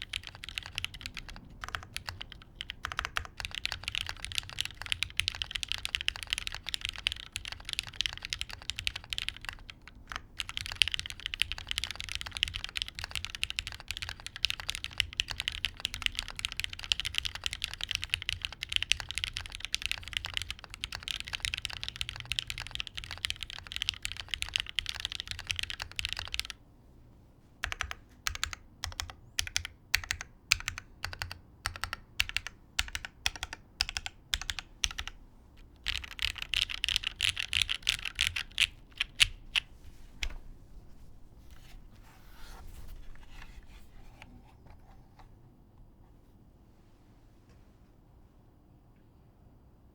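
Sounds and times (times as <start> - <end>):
mechanical keyboard typing: 0.0 - 26.6, 27.6 - 40.3.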